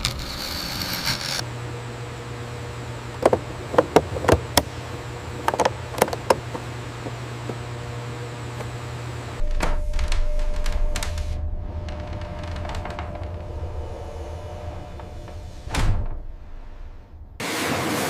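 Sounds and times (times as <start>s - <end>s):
steady low hum: 0.0s - 17.4s
deep loud rumble: 9.4s - 17.4s.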